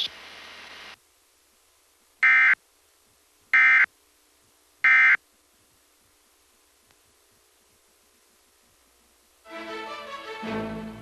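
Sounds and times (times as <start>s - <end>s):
buzzy digital data bursts: 2.2s - 2.6s.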